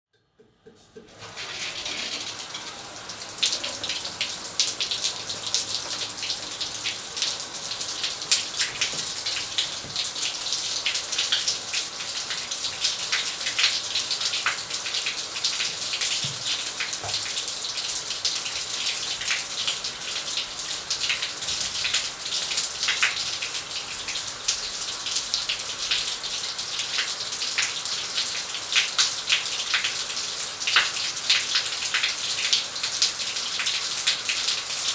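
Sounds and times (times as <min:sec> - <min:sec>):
shower water spraying: 0:01.0 - 0:19.5.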